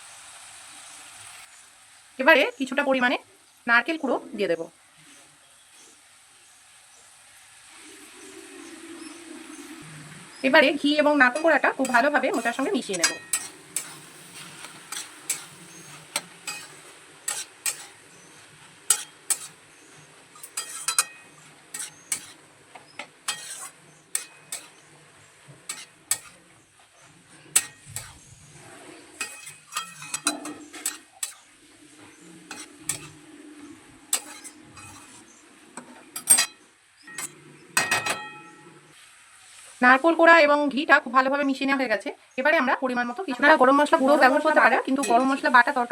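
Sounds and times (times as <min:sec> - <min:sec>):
faint sizzle: 0:00.0 - 0:45.9
spatula scraping a pan: 0:11.2 - 0:39.0, 0:44.0 - 0:45.8.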